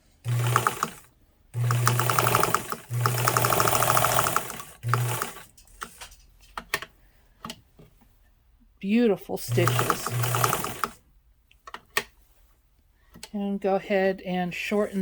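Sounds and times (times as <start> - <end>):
sewing machine stitching: 0.0 - 6.1, 9.4 - 11.0.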